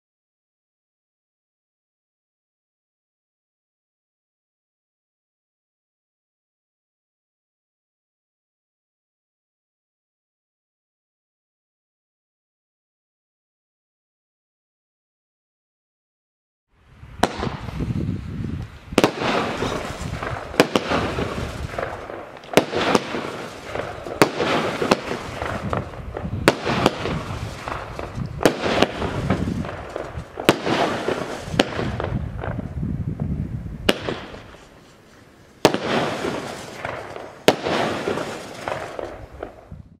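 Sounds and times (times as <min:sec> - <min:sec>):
crackling firework bursts: 0:17.0 - 0:40.0
firework launch shots: 0:17.2 - 0:18.0, 0:18.9 - 0:32.8, 0:33.8 - 0:34.7, 0:35.6 - 0:39.8.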